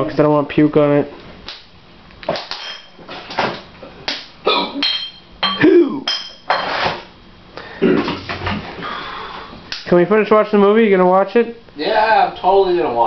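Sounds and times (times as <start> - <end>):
beer bottles clinking: 2.4 - 3.4, 4.5 - 7.1.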